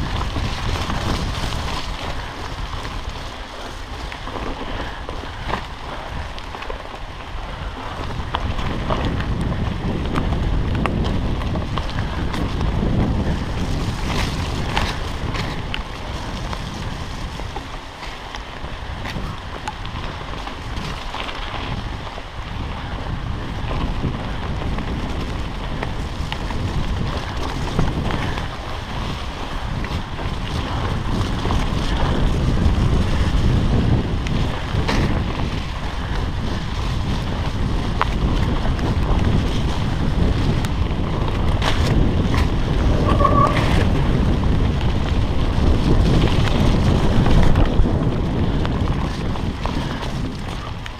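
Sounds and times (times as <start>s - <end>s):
wind buffeting microphone: 0.0s - 50.9s
bike knocks and rattles: 7.9s - 21.9s, 23.6s - 42.9s.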